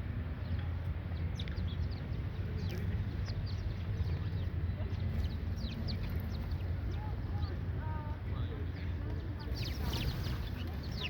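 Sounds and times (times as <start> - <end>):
small birds chirping: 0.3 - 7.8, 8.7 - 11.0.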